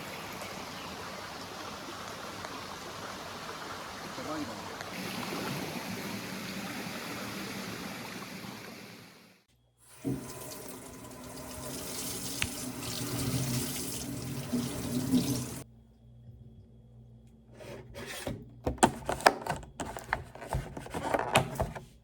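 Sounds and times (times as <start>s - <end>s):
running water rushing: 0.0s - 15.6s.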